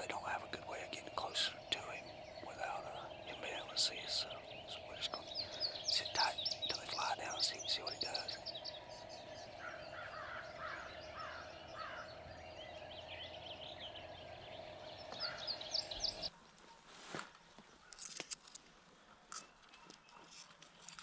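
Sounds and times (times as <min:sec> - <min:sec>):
birds chirping: 0:00.0 - 0:16.3
steady low hum: 0:00.0 - 0:16.3
clicks and rustles: 0:17.1 - 0:18.7.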